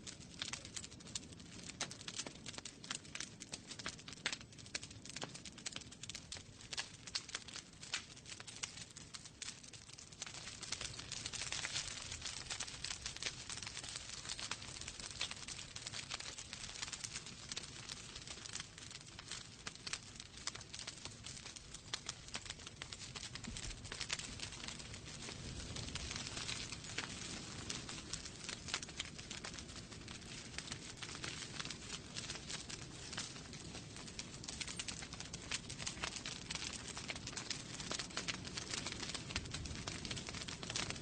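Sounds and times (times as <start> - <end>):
wood fire crackling and popping: 0.0 - 41.0.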